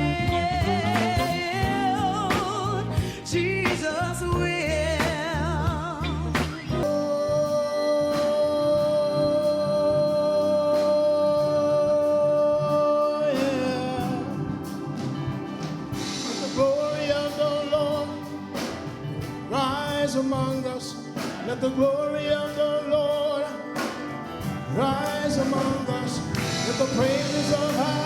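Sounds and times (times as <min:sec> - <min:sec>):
gospel worship music with singing: 0:00.0 - 0:28.0.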